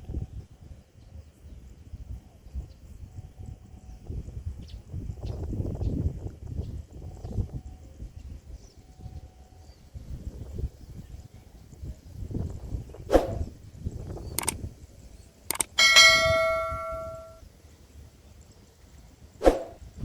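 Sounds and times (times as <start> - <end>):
bell ringing: 15.5 - 17.4
sharp knocks: 15.5 - 17.4.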